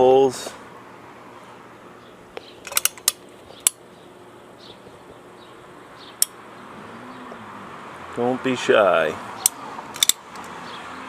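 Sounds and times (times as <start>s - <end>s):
sharp mechanical clicks: 2.6s - 3.8s, 9.4s - 10.6s.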